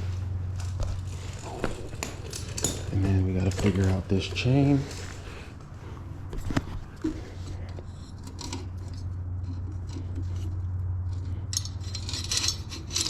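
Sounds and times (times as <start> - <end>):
steady low hum: 0.0 - 13.0
chain links clinking and rattling: 0.6 - 5.2, 8.0 - 13.0.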